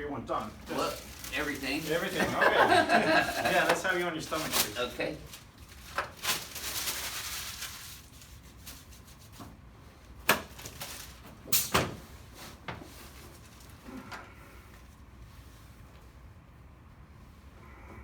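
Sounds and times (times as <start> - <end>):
clothes and padding rustling: 0.3 - 8.0.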